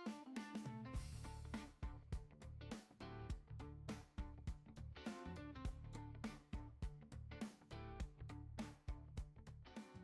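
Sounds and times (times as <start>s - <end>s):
guitar music: 0.0s - 10.0s
steady drum beat: 1.0s - 4.7s.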